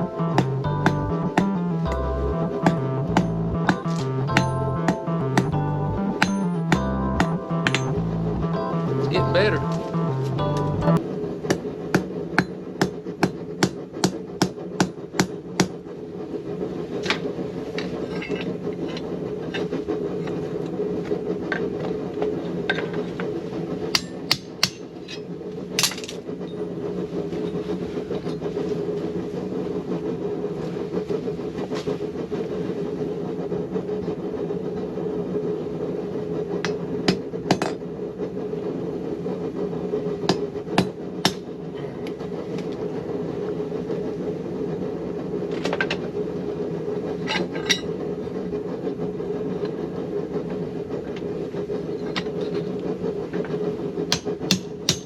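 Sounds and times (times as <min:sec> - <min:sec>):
steady droning hum: 0:00.0 - 0:55.0
hammer striking steel on anvil: 0:02.6 - 0:05.5, 0:06.2 - 0:08.1, 0:24.0 - 0:25.2, 0:40.3 - 0:41.4, 0:54.1 - 0:55.0.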